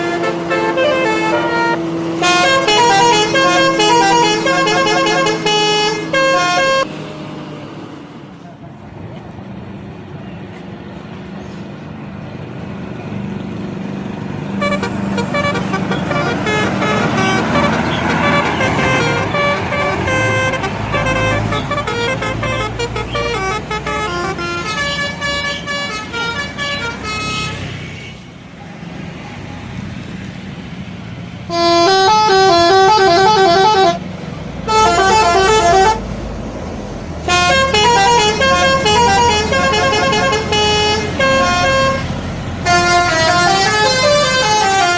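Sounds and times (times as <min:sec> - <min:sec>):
melodic air horn: 0:00.0 - 0:06.9, 0:14.6 - 0:27.7, 0:31.5 - 0:34.0, 0:34.6 - 0:36.1, 0:37.3 - 0:44.9
bus engine rumble: 0:00.0 - 0:44.9.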